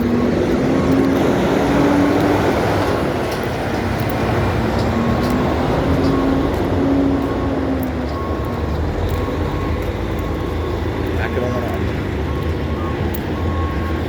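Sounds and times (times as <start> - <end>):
sharp clicks: 2.1 - 11.8.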